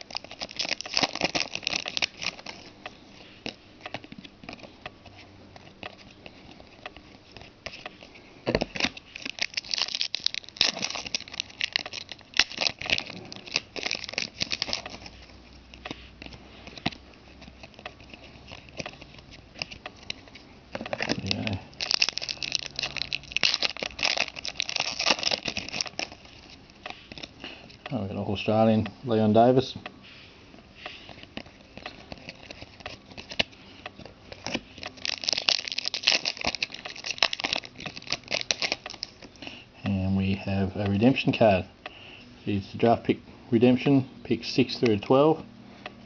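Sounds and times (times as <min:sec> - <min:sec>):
card pack wrappers crinkling: 0:00.0 - 0:27.8, 0:30.8 - 0:39.5.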